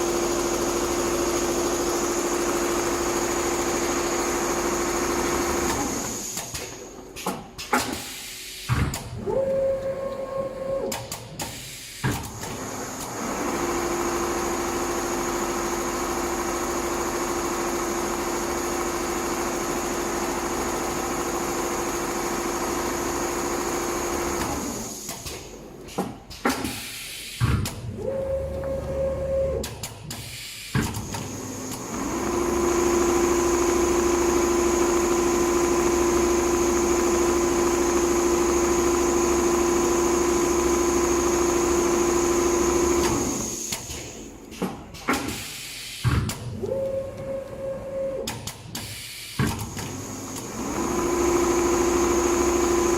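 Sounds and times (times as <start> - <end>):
sewing machine whining: 0.0 - 6.4, 12.4 - 25.1, 31.0 - 44.3, 49.7 - 52.9.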